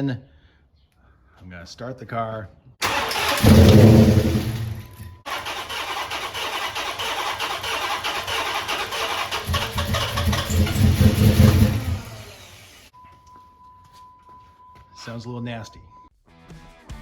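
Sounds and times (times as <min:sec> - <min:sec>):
car engine revving: 0:02.8 - 0:12.9.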